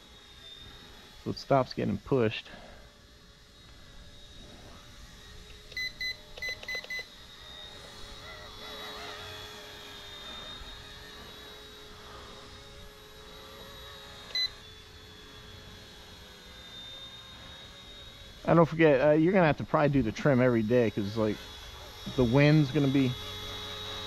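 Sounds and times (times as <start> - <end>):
rc helicopter rotor whine: 0.0 - 24.0
short electronic beeps: 5.8 - 7.1.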